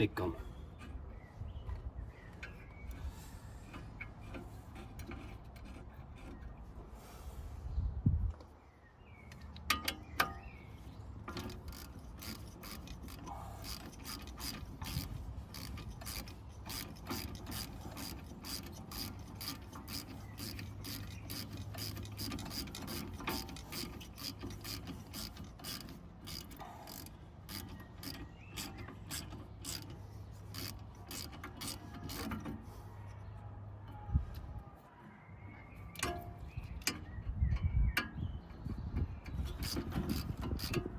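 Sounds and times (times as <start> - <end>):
ratchet wrench clicking: 11.2 - 32.6, 39.3 - 40.9.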